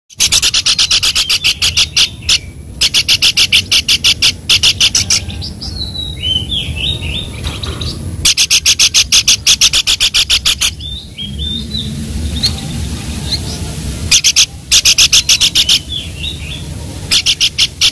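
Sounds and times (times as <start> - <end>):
bird rasping calls: 0.1 - 5.6, 8.2 - 12.6, 14.1 - 17.9.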